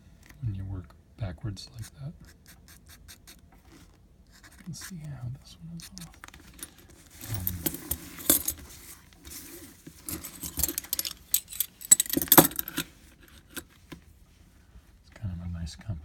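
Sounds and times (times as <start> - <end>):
metal handcuffs jangling: 6.4 - 8.6, 10.0 - 13.6.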